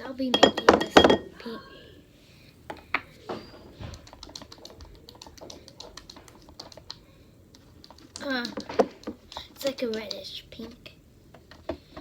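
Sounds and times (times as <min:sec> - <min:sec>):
spatula and containers clicking: 0:03.9 - 0:10.8.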